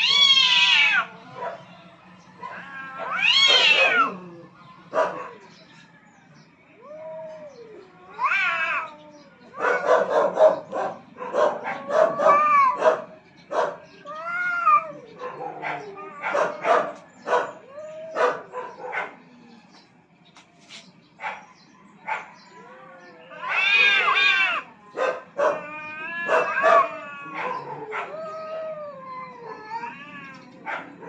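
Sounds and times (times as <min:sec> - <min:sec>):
cats yowling in a fight: 0:00.0 - 0:01.3, 0:02.4 - 0:05.0, 0:06.8 - 0:10.7, 0:11.6 - 0:13.1, 0:14.0 - 0:18.5, 0:22.5 - 0:31.0.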